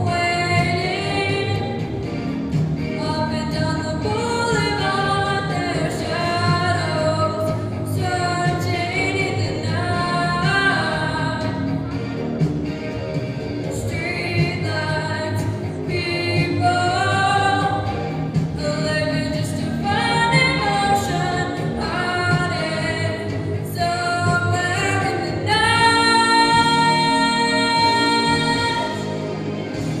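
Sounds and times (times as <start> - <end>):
instrumental accompaniment: 0.0 - 30.0
person singing: 13.8 - 29.2.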